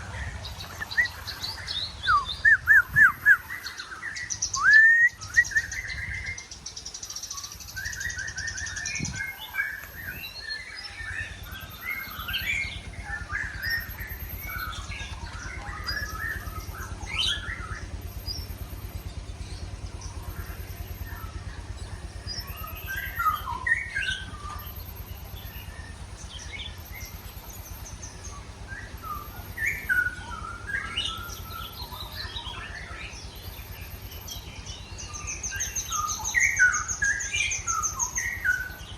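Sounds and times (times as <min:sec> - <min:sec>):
songbirds chirping and whistling: 0:00.0 - 0:38.9
steady low hum: 0:00.0 - 0:38.9
high-pitched pulsing tone: 0:07.6 - 0:37.9.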